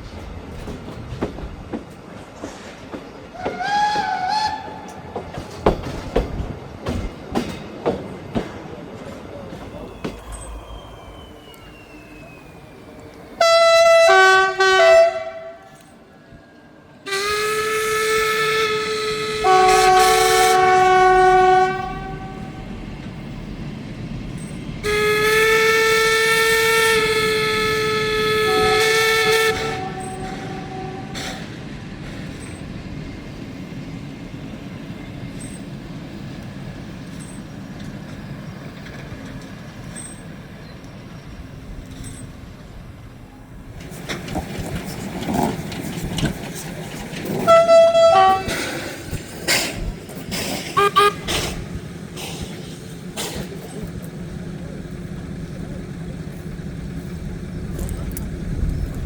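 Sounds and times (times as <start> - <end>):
train rumbling past: 0.0 - 59.0
train whistle blasts: 3.4 - 4.8, 13.4 - 15.9, 17.0 - 22.6, 24.8 - 31.5, 47.4 - 48.9, 50.7 - 51.6
wheels clicking on rails: 34.6 - 59.0.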